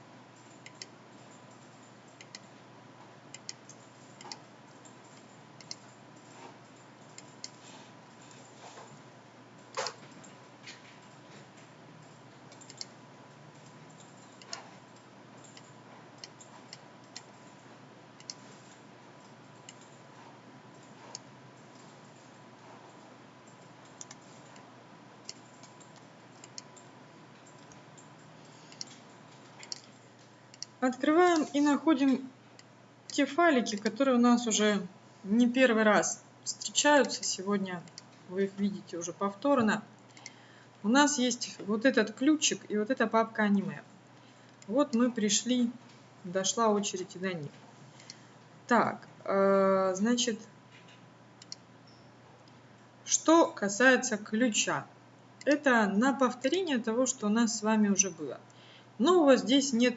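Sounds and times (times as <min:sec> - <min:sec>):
faint electrical hum: 0:00.0 - 0:59.9
computer mouse and keyboard clicks: 0:00.4 - 0:02.5, 0:03.3 - 0:09.0, 0:09.6 - 0:31.7, 0:40.1 - 0:40.4, 0:50.7 - 0:52.6
mouse and keyboard clicks: 0:03.3 - 0:06.4, 0:09.7 - 0:10.8, 0:12.5 - 0:12.9, 0:13.6 - 0:14.8, 0:18.2 - 0:18.8, 0:22.7 - 0:24.7, 0:29.6 - 0:30.0, 0:50.8 - 0:52.0.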